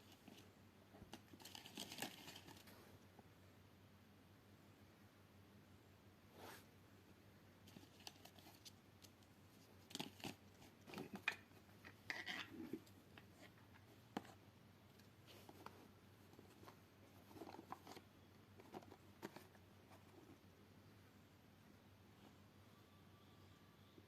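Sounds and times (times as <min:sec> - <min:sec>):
packaging clicks and rustles: 0:01.1 - 0:02.7, 0:09.8 - 0:13.3.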